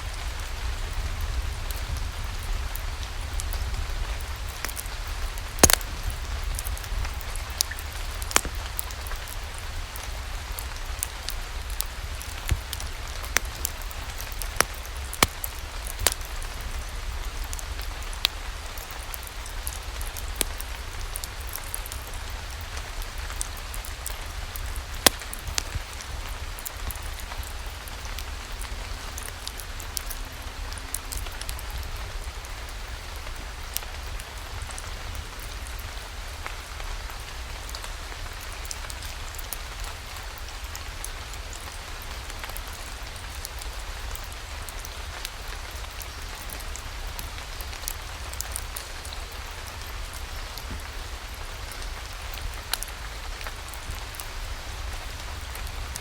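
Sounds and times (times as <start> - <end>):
steady rain falling: 0.0 - 56.0
sharp ticks: 5.6 - 5.8.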